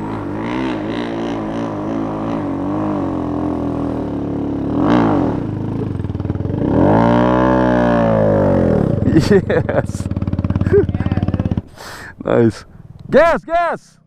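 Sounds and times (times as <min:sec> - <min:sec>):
minibike engine revving: 0:00.0 - 0:13.1.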